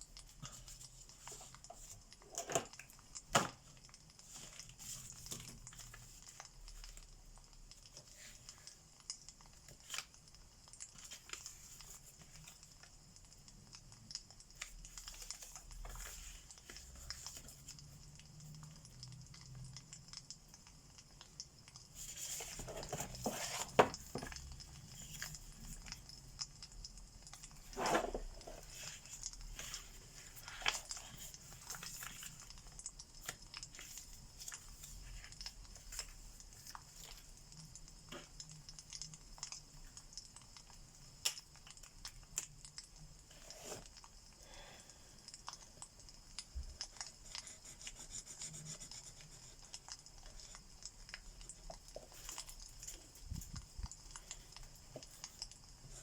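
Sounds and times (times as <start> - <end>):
wood fire crackling and popping: 0.0 - 43.3.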